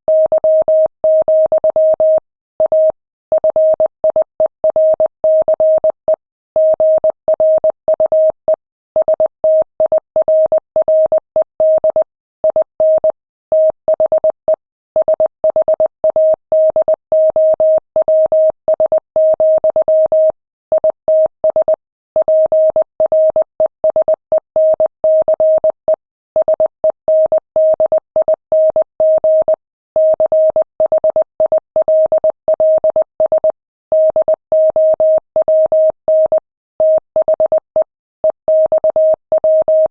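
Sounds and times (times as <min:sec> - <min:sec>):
morse code beeps: 0:26.4 - 0:39.9.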